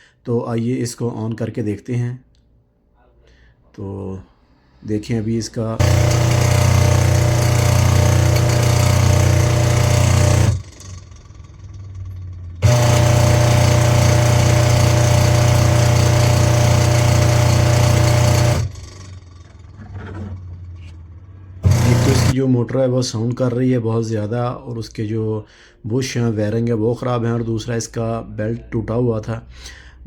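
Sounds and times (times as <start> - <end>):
washing machine motor buzzing hum: 5.8 - 11.4, 12.5 - 20.8, 21.5 - 22.4.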